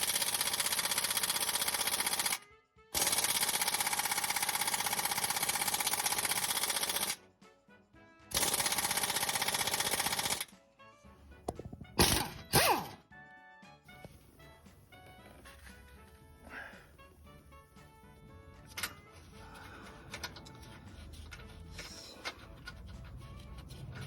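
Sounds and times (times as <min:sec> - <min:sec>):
power tool hammering rattle: 0:00.0 - 0:02.4, 0:03.0 - 0:07.2, 0:08.3 - 0:10.4, 0:11.5 - 0:13.0.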